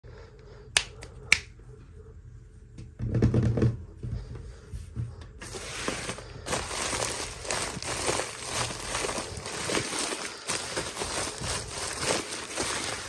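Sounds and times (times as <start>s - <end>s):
packaging rustling and crinkling: 5.4s - 13.0s.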